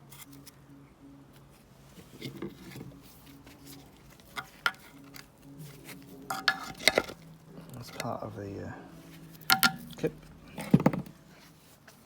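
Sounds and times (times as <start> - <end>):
hand tools clinking and scraping: 1.9 - 12.0
metal rattling: 9.3 - 11.4.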